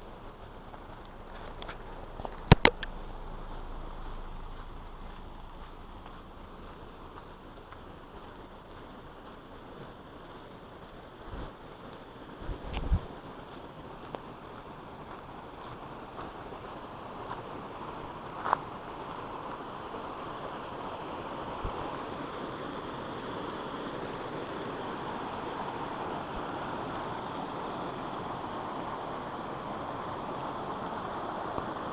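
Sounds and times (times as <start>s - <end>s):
creek water rushing over fall: 0.0s - 31.9s
short click: 2.4s - 3.0s.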